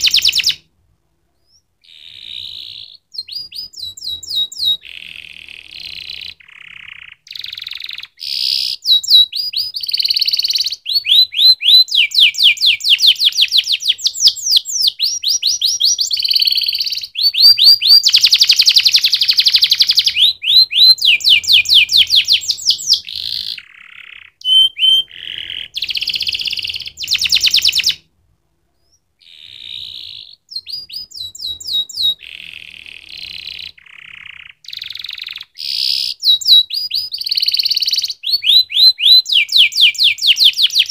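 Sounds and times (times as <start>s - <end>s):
canary singing trills: 0.0s - 0.7s, 1.4s - 28.1s, 28.8s - 40.9s.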